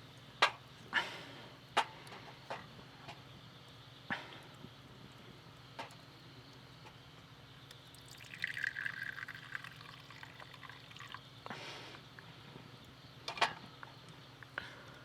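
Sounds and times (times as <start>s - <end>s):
liquid being poured: 7.9s - 11.3s.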